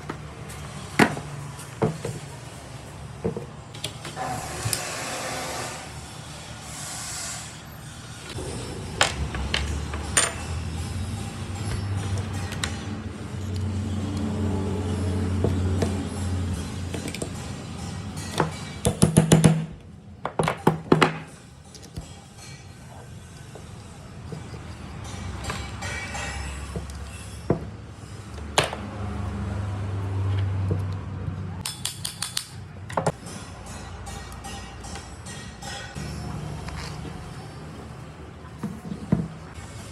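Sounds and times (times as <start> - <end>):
background music: 8.4 - 26.8
small metal parts clinking: 31.6 - 37.5.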